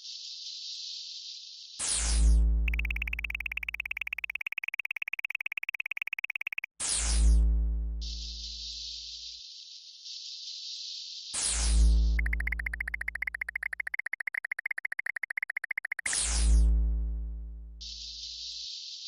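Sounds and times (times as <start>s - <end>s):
rapidly pulsing high beep: 2.7s - 6.8s, 12.2s - 16.2s.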